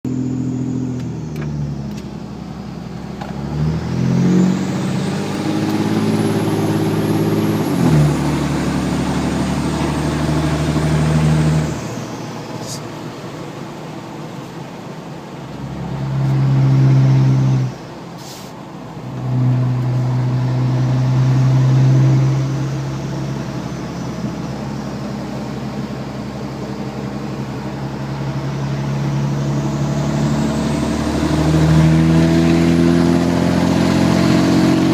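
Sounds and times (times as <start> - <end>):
diesel truck engine under load: 0.0 - 34.9
high turbo whistle: 15.6 - 34.9.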